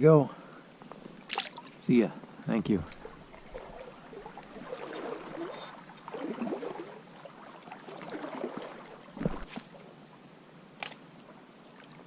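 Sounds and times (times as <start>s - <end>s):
creek water gurgling: 2.8s - 9.9s.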